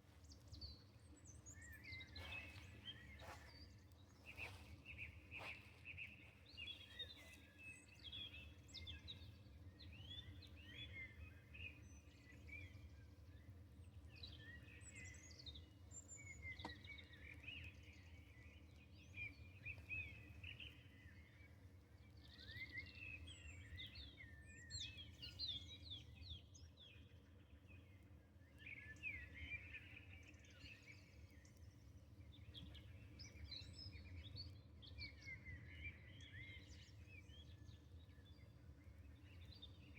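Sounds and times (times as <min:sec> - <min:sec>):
small birds chirping and trilling: 0:02.2 - 0:03.6.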